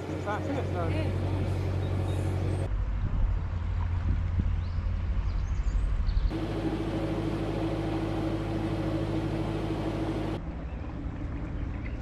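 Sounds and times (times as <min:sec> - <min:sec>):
boat engine rumbling: 0:00.0 - 0:04.0, 0:06.3 - 0:12.0
steady hum: 0:06.3 - 0:10.4.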